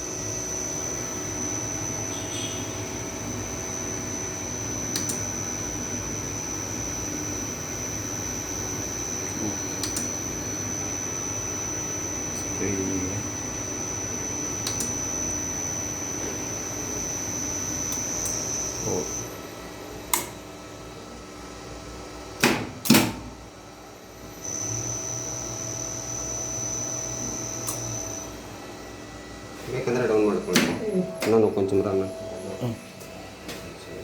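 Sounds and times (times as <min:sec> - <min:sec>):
multimeter continuity beep: 0:00.3 - 0:19.3.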